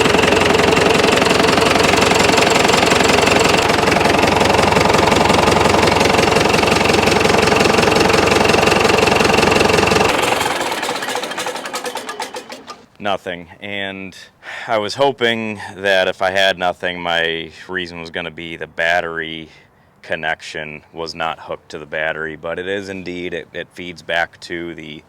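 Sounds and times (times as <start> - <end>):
tractor diesel engine idling: 0.0 - 12.9.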